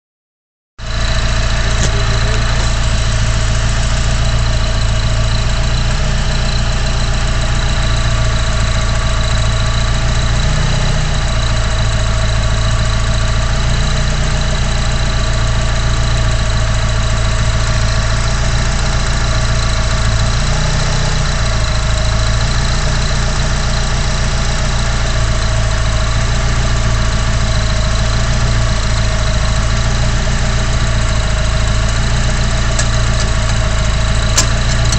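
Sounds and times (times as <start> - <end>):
engine idling: 0.8 - 34.9
turbocharger whine: 0.8 - 34.9.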